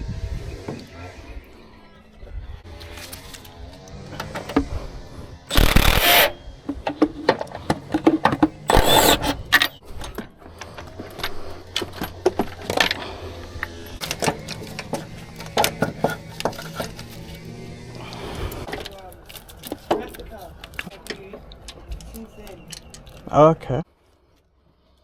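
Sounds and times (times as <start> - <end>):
metal tools clinking: 5.5 - 13.0.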